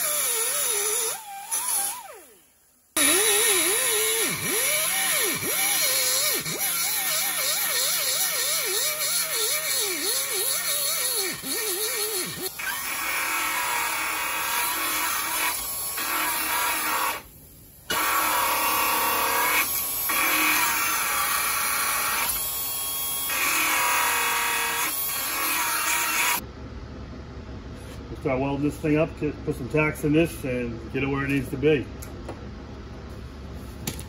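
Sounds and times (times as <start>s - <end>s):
power tool cutting sheet metal: 0.0s - 2.4s, 3.0s - 17.3s, 17.9s - 26.4s.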